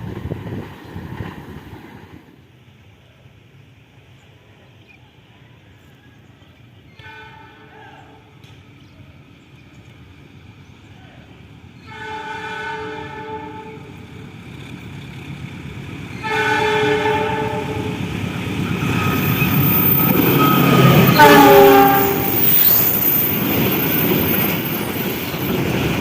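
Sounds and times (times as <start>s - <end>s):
approaching train rumble: 0.0s - 26.0s
locomotive horn chord blasts: 11.9s - 13.9s, 16.2s - 18.0s, 20.4s - 22.5s.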